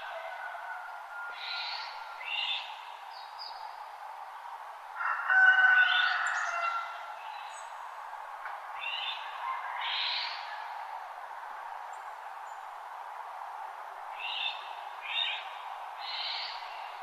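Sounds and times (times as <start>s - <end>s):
steady background hiss: 0.0s - 5.0s, 6.1s - 17.0s.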